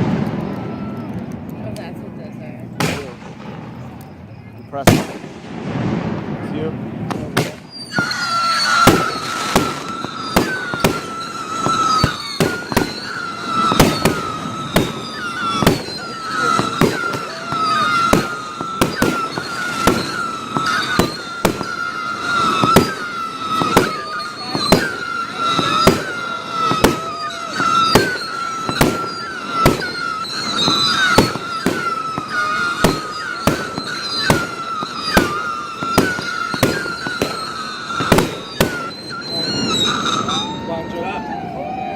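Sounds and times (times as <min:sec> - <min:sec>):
fireworks bangs: 0:00.0 - 0:41.9
high wavering whistle: 0:07.4 - 0:41.9.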